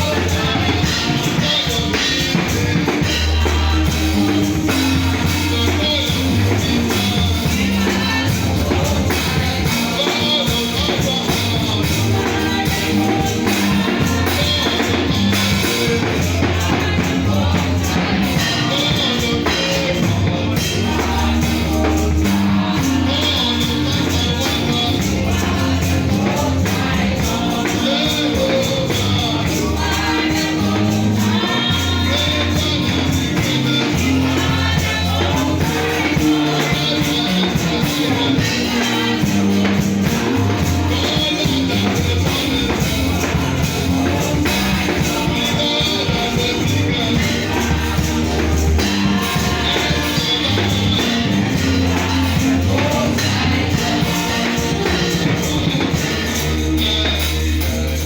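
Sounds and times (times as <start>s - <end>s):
bass line: 0.0s - 58.0s
gospel singing: 0.0s - 58.0s
tambourine: 0.0s - 58.0s.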